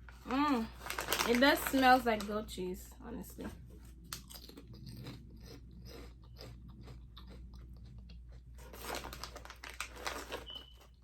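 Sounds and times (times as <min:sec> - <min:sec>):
crunchy chips being chewed: 0:04.0 - 0:11.0.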